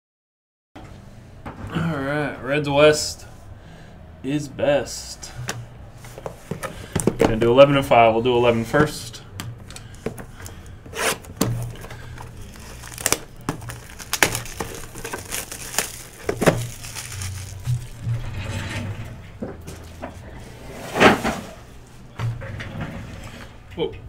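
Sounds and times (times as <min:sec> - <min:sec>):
steady low hum: 0:00.8 - 0:24.0
foil wrapper tearing and crinkling: 0:11.2 - 0:18.1.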